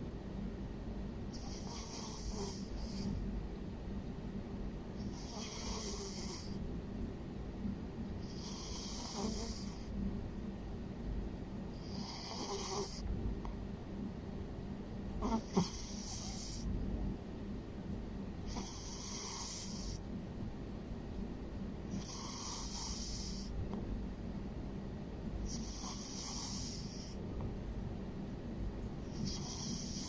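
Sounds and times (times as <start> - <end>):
cat snoring: 1.3 - 3.2, 5.0 - 6.6, 8.2 - 9.9, 11.7 - 13.1, 15.2 - 16.7, 18.5 - 20.0, 21.9 - 23.6, 25.4 - 27.2, 29.0 - 30.0.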